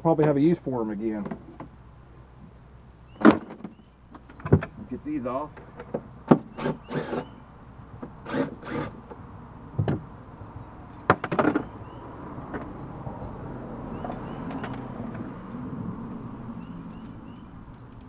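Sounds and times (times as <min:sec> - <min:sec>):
metal hardware clunking and scraping: 0:10.8 - 0:11.7, 0:14.0 - 0:18.0.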